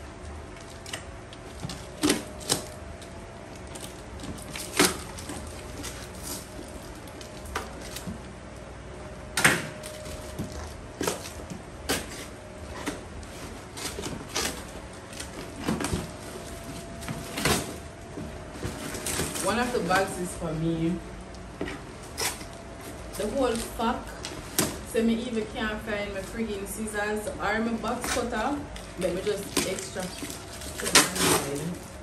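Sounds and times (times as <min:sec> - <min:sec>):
parcel unpacking knocks and rustles: 0:09.4 - 0:20.2.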